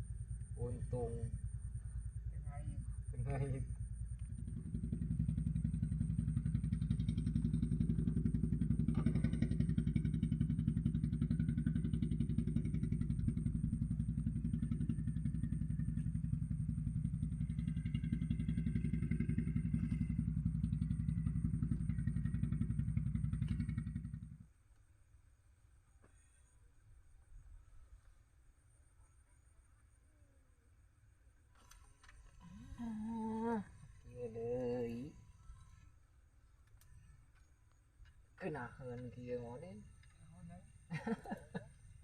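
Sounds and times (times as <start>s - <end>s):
small engine running: 0.0s - 24.6s, 31.5s - 42.0s.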